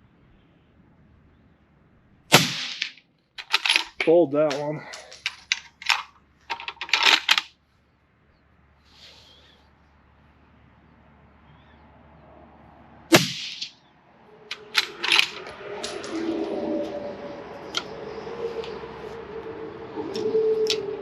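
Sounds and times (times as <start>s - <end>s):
rifle shot: 2.3s - 3.0s, 13.1s - 13.7s
metallic clicks of rifle bolt: 3.4s - 4.1s.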